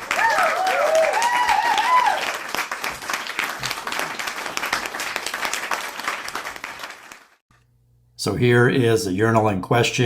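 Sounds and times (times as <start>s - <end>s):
cheering whoops: 0.0s - 2.5s
crowd applauding: 0.0s - 7.4s.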